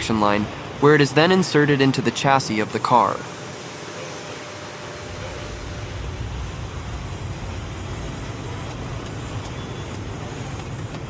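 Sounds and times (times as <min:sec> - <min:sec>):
mechanical hum and hiss: 0:00.0 - 0:11.0
low rumble: 0:04.7 - 0:10.5.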